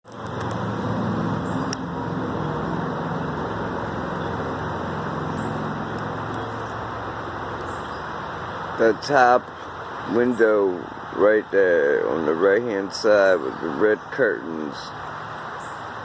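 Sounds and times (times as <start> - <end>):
motor vehicle rumble: 0.0 - 16.0
faint wavering hum: 0.3 - 11.2.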